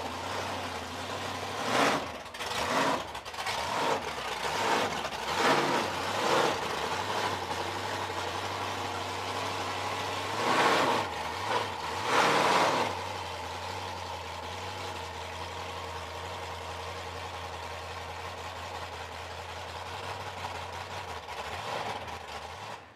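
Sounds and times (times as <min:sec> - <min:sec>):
car engine revving and idling: 0:00.0 - 0:22.9.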